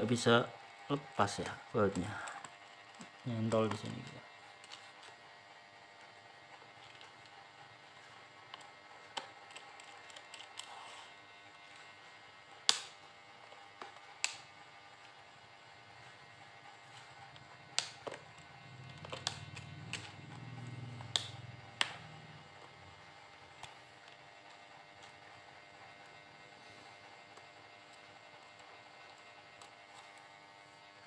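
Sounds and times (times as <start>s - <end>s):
plastic clicks and snaps: 12.6s - 13.0s, 13.8s - 14.5s, 17.7s - 20.4s, 21.0s - 22.0s.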